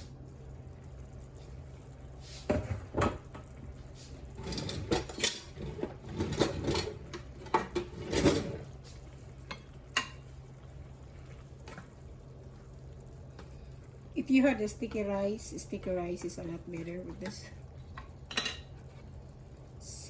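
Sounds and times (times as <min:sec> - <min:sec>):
pot lid and utensils clattering: 0:04.4 - 0:08.7, 0:18.3 - 0:18.7.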